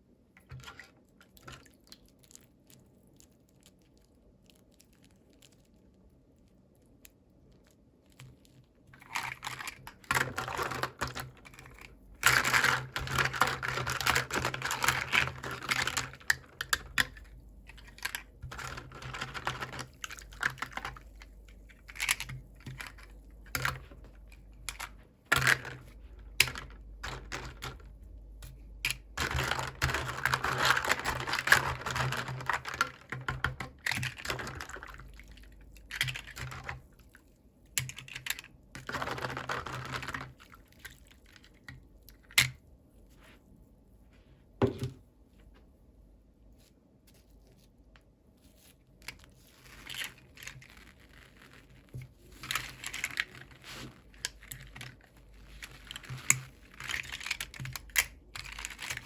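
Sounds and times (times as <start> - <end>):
packaging crinkling and tearing: 29.2 - 35.2.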